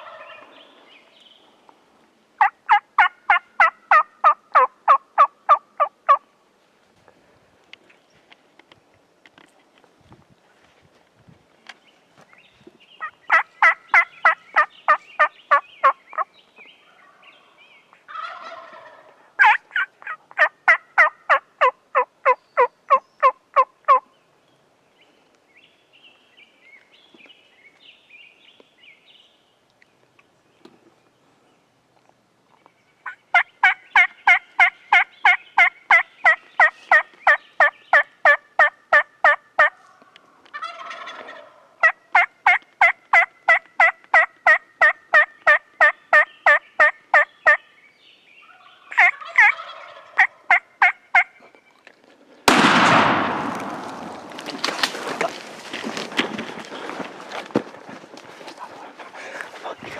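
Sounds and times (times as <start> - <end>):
wild turkey yelping: 0.0 - 0.5, 2.4 - 6.2, 13.0 - 16.0, 18.1 - 24.0, 33.0 - 47.6, 48.4 - 51.4.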